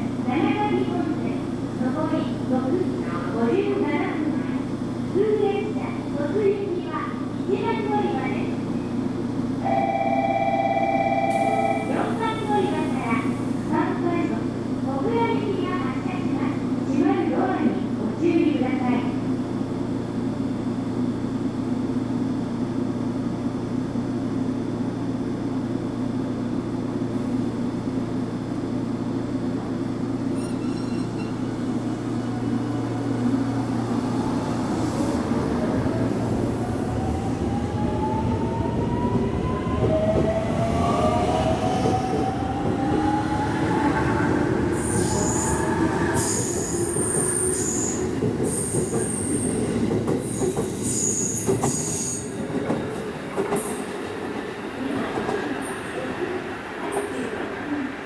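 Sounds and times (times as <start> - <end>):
train motors humming and whining: 11.3 - 58.0
high wheel squeals: 30.3 - 31.6.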